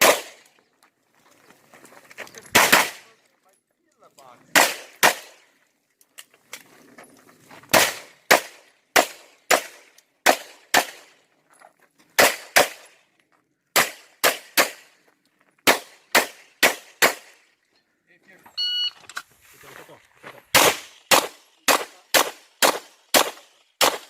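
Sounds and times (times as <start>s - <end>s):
pistol shots: 0.0s - 0.5s, 2.5s - 3.1s, 4.5s - 5.4s, 7.7s - 11.2s, 12.2s - 13.0s, 13.7s - 14.9s, 15.6s - 17.4s, 20.5s - 24.0s.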